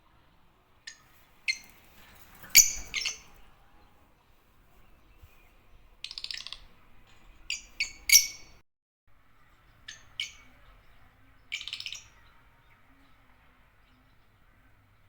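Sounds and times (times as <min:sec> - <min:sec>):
lovebirds chirping and chattering: 0:00.9 - 0:08.6, 0:09.4 - 0:15.0
sharp high bird calls: 0:02.4 - 0:03.4, 0:07.5 - 0:08.6, 0:11.5 - 0:12.3.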